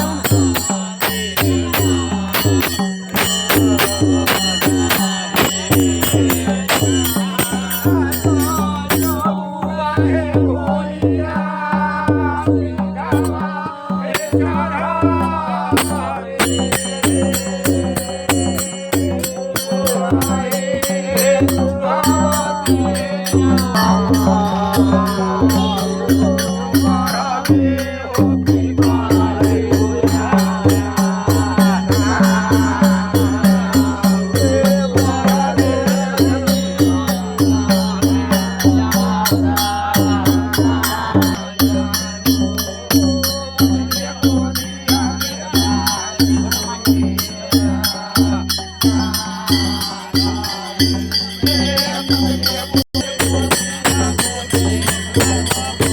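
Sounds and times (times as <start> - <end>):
rattle-like beat: 0.0 - 55.9
wavering melody: 16.4 - 38.6.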